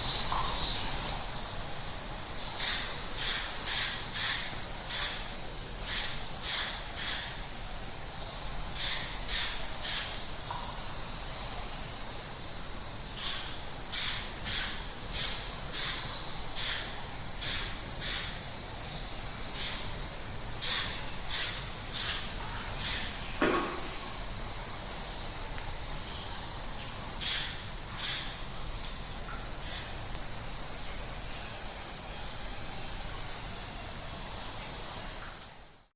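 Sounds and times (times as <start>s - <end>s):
steady high hiss: 0.0s - 35.9s
bats squeaking: 5.8s - 7.8s, 8.6s - 11.3s, 12.4s - 20.0s, 20.6s - 24.3s, 26.0s - 30.0s.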